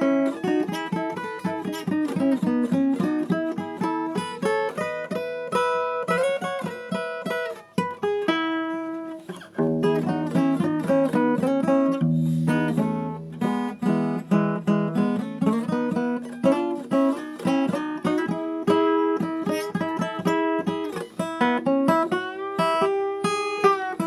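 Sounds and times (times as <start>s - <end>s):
acoustic guitar playing: 0.0s - 24.0s.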